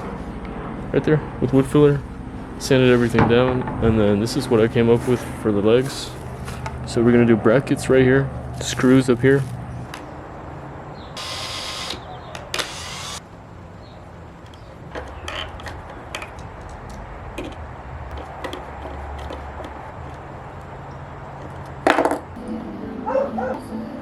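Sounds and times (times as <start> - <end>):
background music: 22.4 - 24.0.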